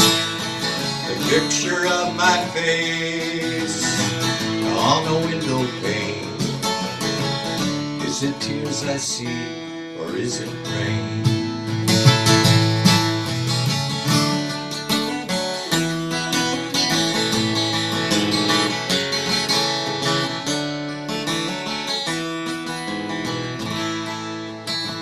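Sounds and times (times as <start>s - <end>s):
acoustic guitar strumming: 0.0s - 25.0s.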